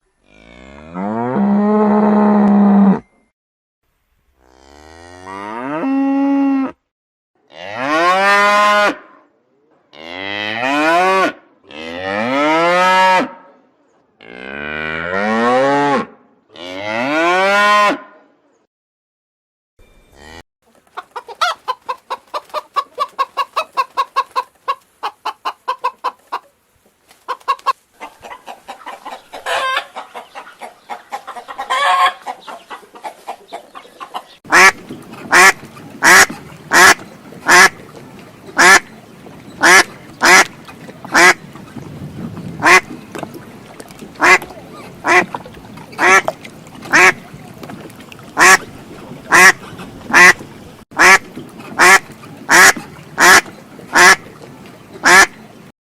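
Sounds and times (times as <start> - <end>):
chickens clucking: 20.7 - 41.9, 42.6 - 55.6
duck quacking: 27.3 - 37.8, 38.6 - 38.9, 39.6 - 40.5, 41.1 - 41.4, 42.6 - 42.9, 44.2 - 47.4, 48.4 - 48.7, 49.3 - 50.4, 51.0 - 54.3, 55.0 - 55.4.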